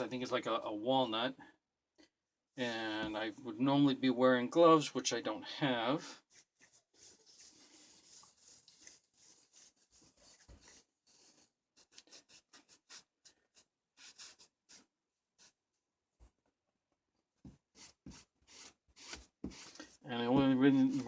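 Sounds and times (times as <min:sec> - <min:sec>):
hands rubbing and scratching wood: 0:06.2 - 0:15.6, 0:17.4 - 0:21.0.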